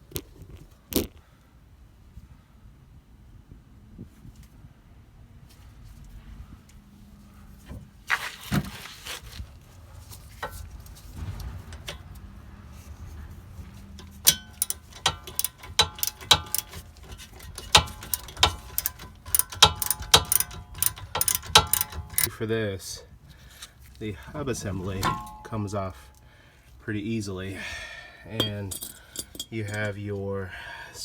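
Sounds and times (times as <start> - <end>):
ratchet wrench clicking: 14.0 - 22.3.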